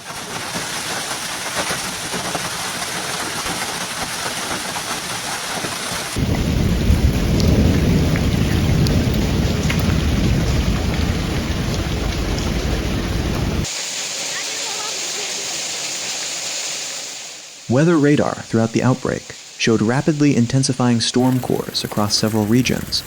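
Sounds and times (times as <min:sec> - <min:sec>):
raindrops ticking: 0:00.0 - 0:13.7, 0:18.6 - 0:23.0
heavy rain pouring: 0:00.0 - 0:23.0
deep continuous rumble: 0:06.2 - 0:13.7.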